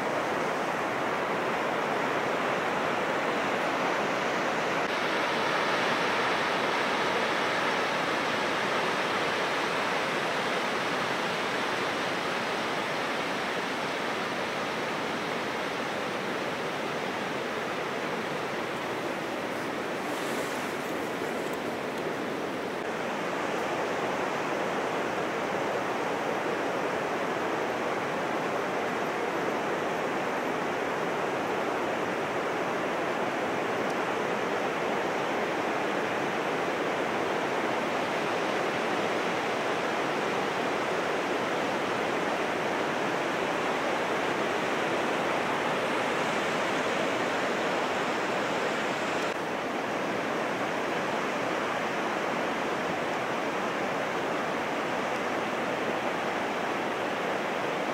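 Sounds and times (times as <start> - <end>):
heavy surf breaking on beach: 0.0 - 57.9.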